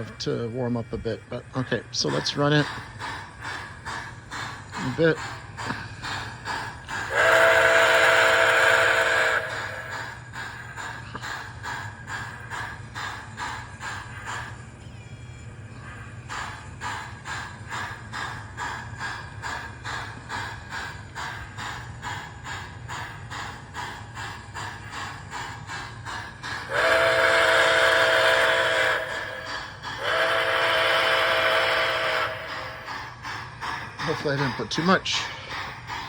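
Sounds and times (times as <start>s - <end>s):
model steam locomotive chuffing: 0.0s - 36.0s
steam whistle blasts: 7.0s - 10.2s, 26.7s - 32.9s.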